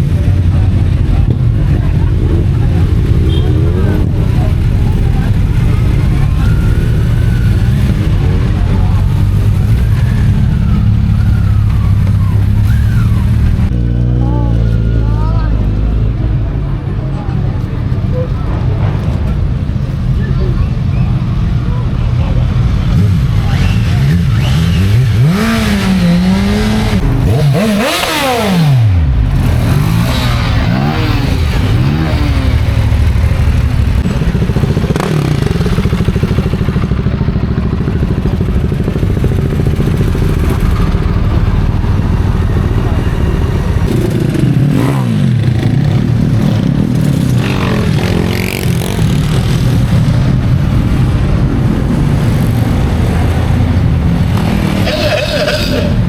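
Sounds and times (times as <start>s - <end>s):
low rumble of many engines: 0.0s - 56.0s
motorcycles riding past: 0.0s - 56.0s
engine revving: 22.5s - 56.0s.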